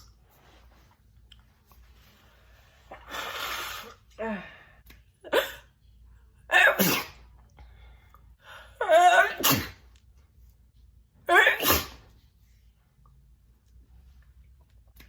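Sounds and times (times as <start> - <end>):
woman sneezing: 8.8 - 9.8, 11.3 - 12.0.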